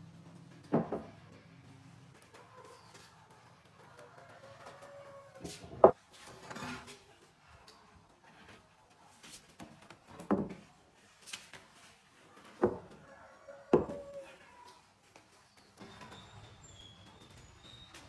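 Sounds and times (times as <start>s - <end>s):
wooden knocks: 0.7s - 1.1s, 5.6s - 6.0s, 13.7s - 14.0s
wood sliding and handling: 5.5s - 7.0s.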